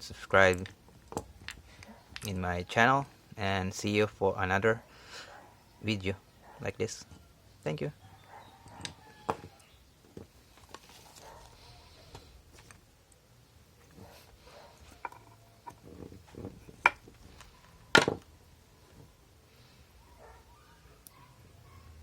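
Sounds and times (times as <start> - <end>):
small objects clicking and knocking: 0.4 - 2.4, 14.9 - 18.3.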